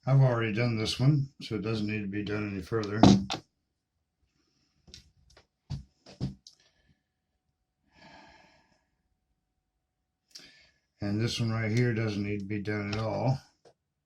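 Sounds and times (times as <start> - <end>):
person exhaling: 7.9 - 8.9.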